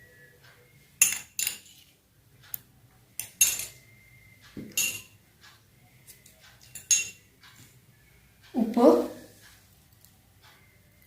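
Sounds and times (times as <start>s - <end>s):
spoon clinking against a bowl: 1.0s - 1.7s, 3.2s - 3.8s, 4.6s - 5.2s, 6.6s - 7.3s.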